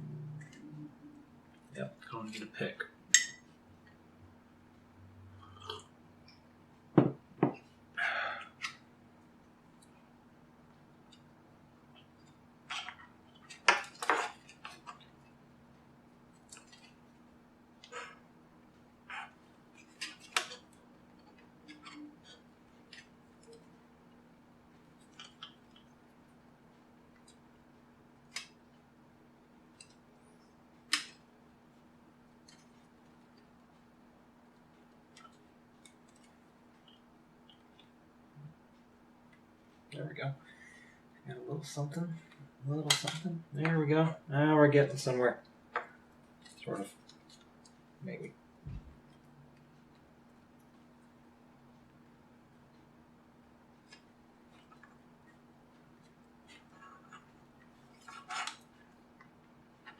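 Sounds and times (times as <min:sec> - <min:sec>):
faint steady hum: 0:00.0 - 0:59.9
tools knocking on workbench: 0:07.0 - 0:07.6.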